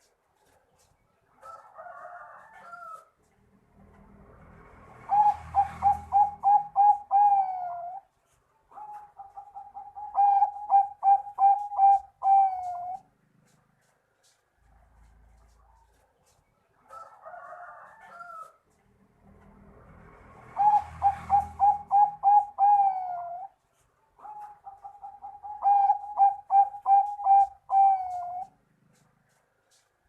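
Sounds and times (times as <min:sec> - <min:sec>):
dove cooing: 0:05.1 - 0:08.1, 0:08.7 - 0:13.1, 0:20.5 - 0:23.6, 0:24.2 - 0:29.0
rough dove call: 0:05.1 - 0:08.1, 0:08.7 - 0:13.1, 0:20.6 - 0:23.6, 0:24.2 - 0:28.6.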